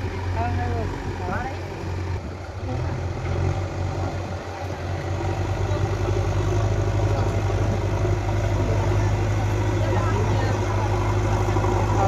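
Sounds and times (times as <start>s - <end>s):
digger diesel engine running: 0.0s - 12.0s.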